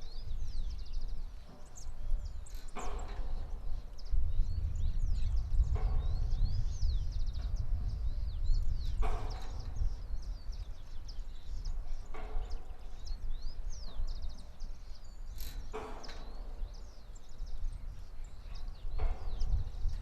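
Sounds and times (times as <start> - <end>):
small birds chirping: 0.0 - 20.0
wind rumbling on microphone: 0.0 - 20.0
windmill creaking: 0.0 - 20.0.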